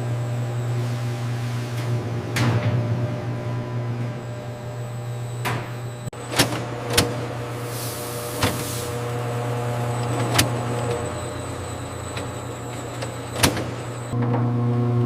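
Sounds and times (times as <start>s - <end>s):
factory machinery humming: 0.0s - 15.0s.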